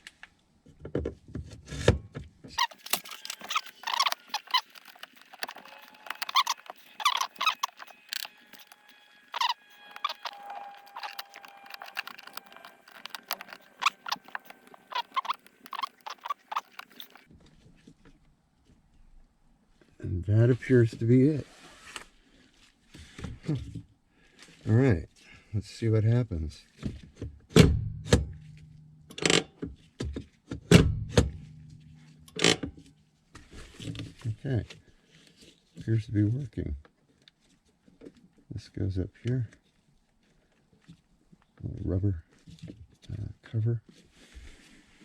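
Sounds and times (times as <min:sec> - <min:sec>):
small parts clicking and squeaking: 0:02.6 - 0:17.3.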